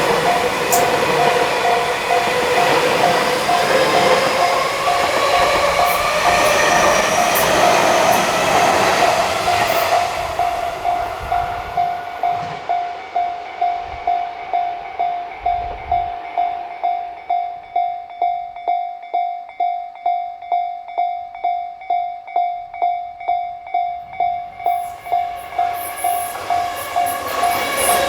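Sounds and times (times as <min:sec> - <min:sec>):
train rushing past: 0:00.0 - 0:18.2, 0:24.0 - 0:28.0
level crossing warning bell: 0:00.0 - 0:28.0.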